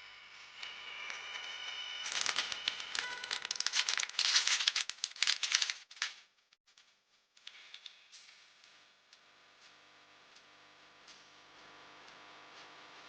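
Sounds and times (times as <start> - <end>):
packaging crinkling: 1.1 - 6.1.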